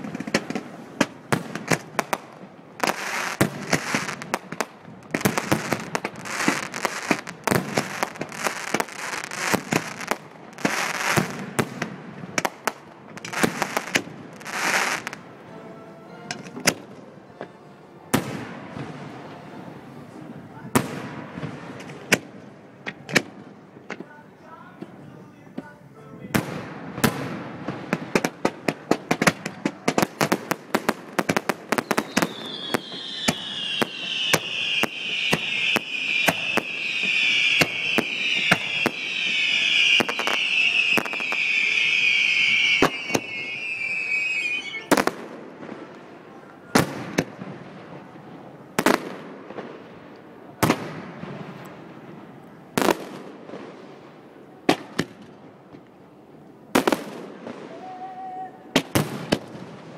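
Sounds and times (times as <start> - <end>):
fireworks bangs and crackles: 0.0 - 15.3, 18.1 - 24.1, 26.3 - 57.9, 58.7 - 59.9
fireworks whistles sliding down: 31.7 - 45.1.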